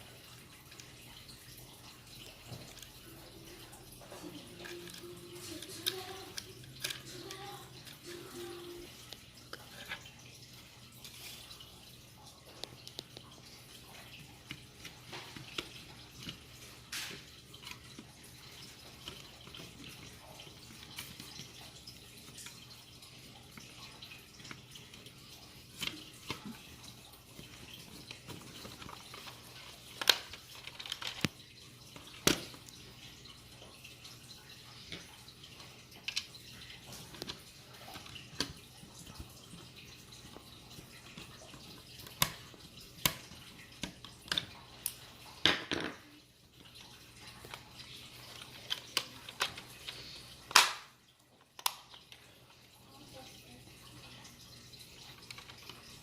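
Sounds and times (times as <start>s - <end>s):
faint steady background noise: 0.0s - 56.0s
plastic toy parts clicking: 4.4s - 8.0s, 28.0s - 31.4s, 48.3s - 49.7s, 51.4s - 52.2s.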